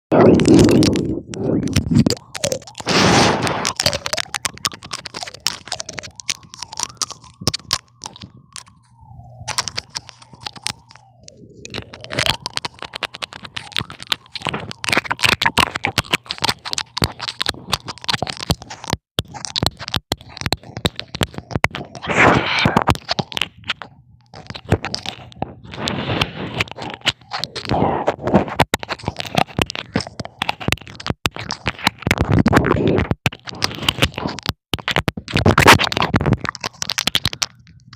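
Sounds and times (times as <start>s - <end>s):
scratching and scraping noises: 0.1s - 37.9s
faint gliding creaking tone: 0.2s - 19.6s.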